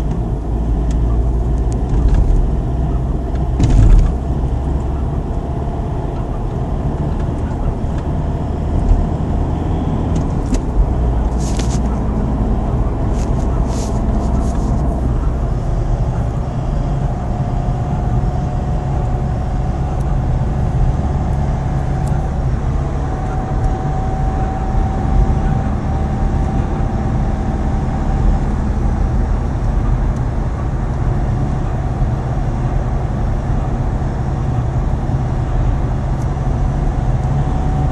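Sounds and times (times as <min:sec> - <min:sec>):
car engine running: 0:00.0 - 0:37.9.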